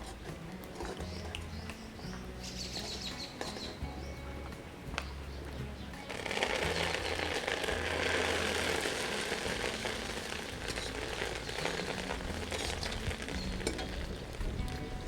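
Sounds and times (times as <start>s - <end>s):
small oil pops: 0.0s - 3.9s
food sizzling in hot oil: 6.0s - 14.9s.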